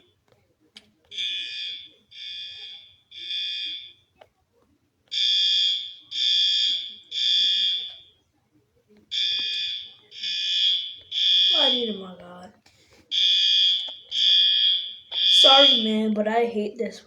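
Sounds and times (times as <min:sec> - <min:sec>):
fire alarm beeps: 0:01.1 - 0:04.1, 0:05.1 - 0:08.1, 0:09.1 - 0:12.0, 0:13.1 - 0:16.0.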